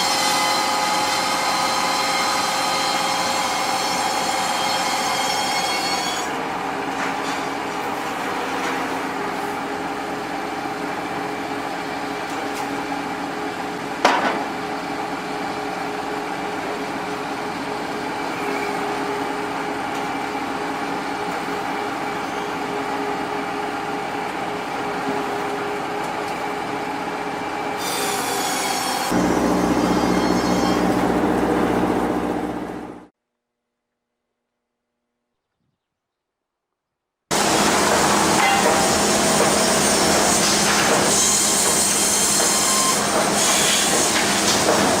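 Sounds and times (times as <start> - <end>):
sawmill saw whining through wood: 0.0 - 6.8, 17.7 - 33.1, 37.3 - 45.0
loud machine: 27.8 - 33.1, 37.3 - 45.0.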